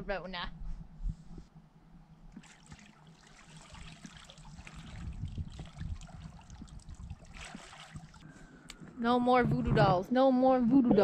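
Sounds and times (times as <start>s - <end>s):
river water trickling and bubbling: 2.3s - 8.3s.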